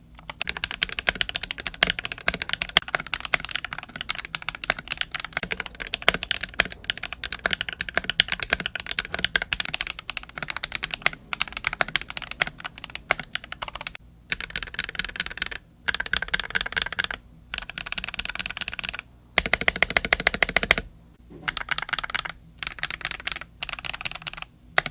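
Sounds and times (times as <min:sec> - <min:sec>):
fast typing on mechanical keyboard: 0:00.2 - 0:20.9, 0:21.5 - 0:24.9.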